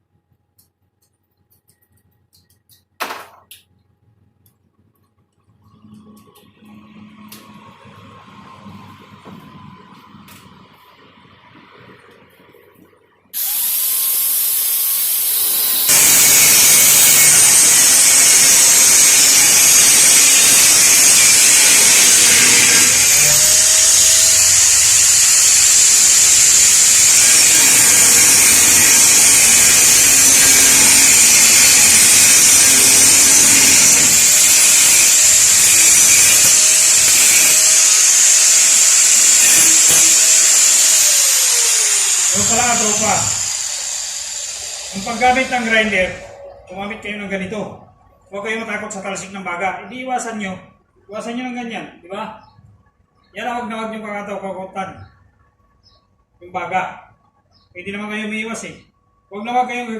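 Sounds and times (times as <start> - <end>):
angle grinder grinding metal: 13.4 - 47.4.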